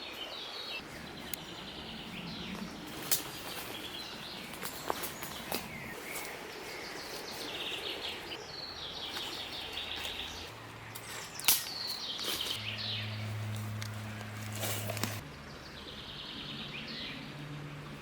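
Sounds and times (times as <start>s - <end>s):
bird singing trills: 0.0s - 14.2s.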